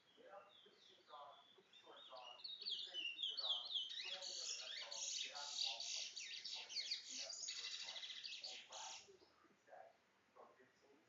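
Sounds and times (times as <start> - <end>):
finch singing high chirps: 0.0 - 9.1.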